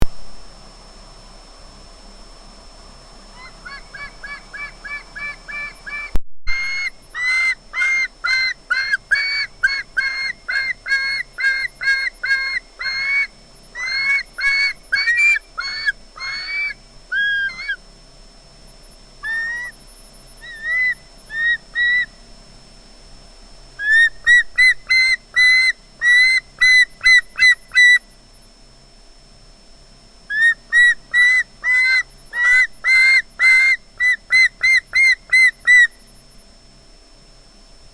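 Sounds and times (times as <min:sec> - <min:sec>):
osprey squealing calls: 0:03.4 - 0:17.8, 0:19.2 - 0:19.8, 0:20.4 - 0:22.1.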